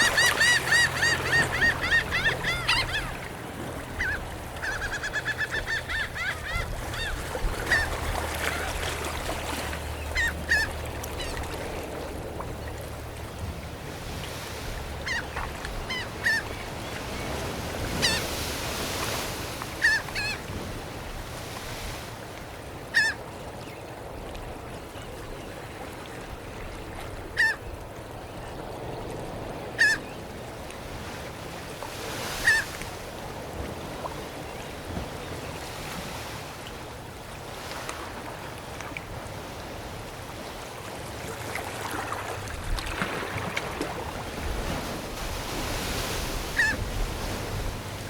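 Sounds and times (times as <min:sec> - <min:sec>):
seagulls crying: 0:00.0 - 0:08.8, 0:09.9 - 0:11.4, 0:15.0 - 0:16.8, 0:19.8 - 0:20.4, 0:27.4 - 0:27.6, 0:29.8 - 0:30.2, 0:32.3 - 0:32.8, 0:46.4 - 0:46.8
surf washing: 0:00.0 - 0:24.9, 0:28.4 - 0:48.0.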